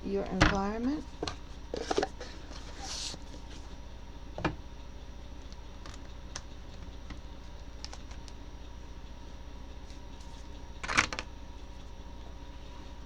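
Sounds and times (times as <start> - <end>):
cards rustling: 0.3 - 3.7.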